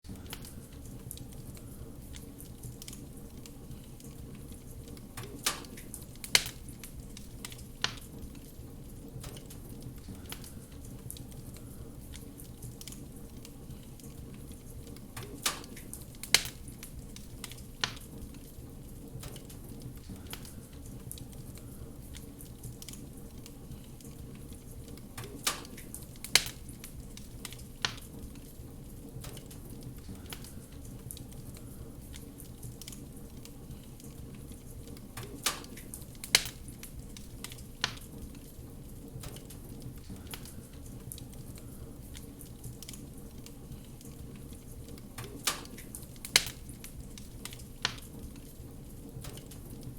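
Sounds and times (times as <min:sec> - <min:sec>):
wood fire crackling: 0:00.0 - 0:49.9
loud sharp fire pops: 0:04.9 - 0:08.5, 0:15.2 - 0:18.5, 0:25.2 - 0:28.5, 0:34.1 - 0:38.5, 0:43.8 - 0:48.5.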